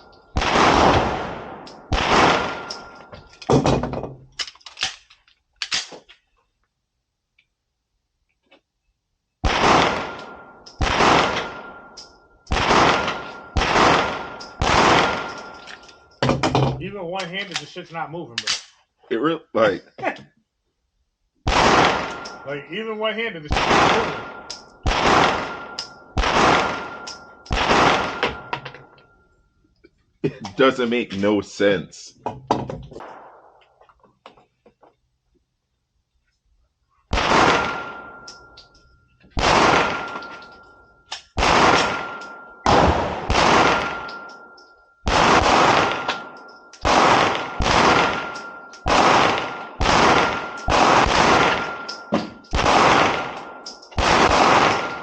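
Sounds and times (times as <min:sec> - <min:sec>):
pistol shots echoing: 0:00.0 - 0:03.1, 0:09.4 - 0:15.7, 0:21.4 - 0:22.6, 0:23.5 - 0:28.5, 0:37.1 - 0:38.6, 0:39.4 - 0:40.6, 0:41.2 - 0:55.0.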